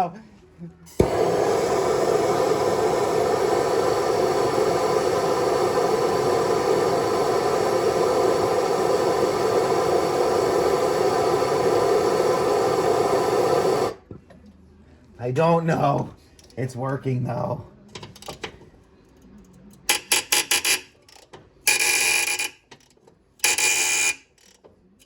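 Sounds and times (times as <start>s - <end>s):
blowtorch flame roaring: 0.9s - 14.0s.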